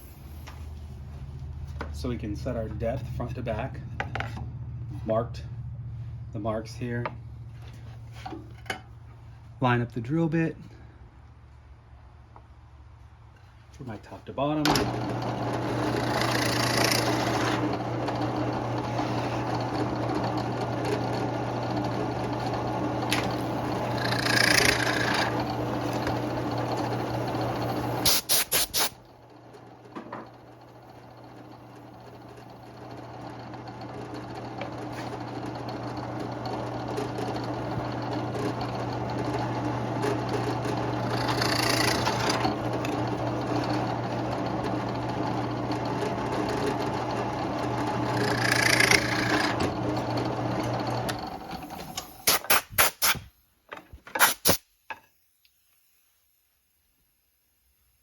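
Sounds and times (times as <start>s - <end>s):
drill press motor humming: 14.6s - 28.1s, 28.9s - 52.2s
drill bit cutting hiss: 27.1s - 29.0s, 48.2s - 49.6s.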